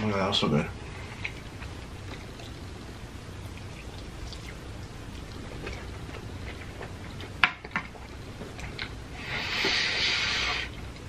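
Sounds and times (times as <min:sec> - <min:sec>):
wet chewing and mouth clicks: 0:03.5 - 0:09.0.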